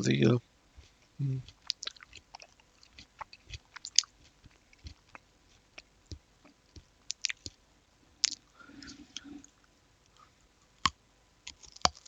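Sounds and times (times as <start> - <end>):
chewing and mouth noises: 0.7 - 7.6, 8.2 - 12.0
soft low thumps: 1.2 - 1.5.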